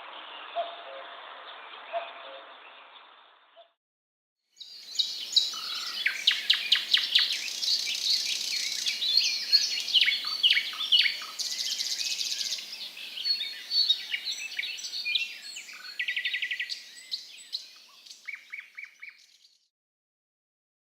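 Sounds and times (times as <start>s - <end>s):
songbird chorus: 4.6s - 19.6s.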